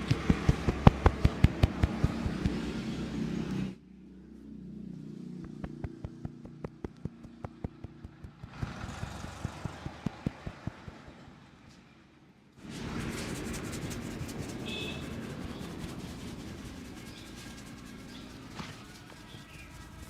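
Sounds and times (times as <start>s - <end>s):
hands tapping on a head: 0.0s - 2.7s, 5.4s - 11.1s
street noise: 0.0s - 20.0s.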